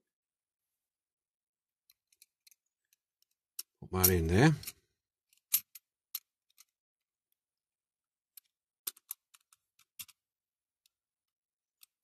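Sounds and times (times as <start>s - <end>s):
small parts clicking: 1.8s - 7.5s, 8.1s - 12.0s.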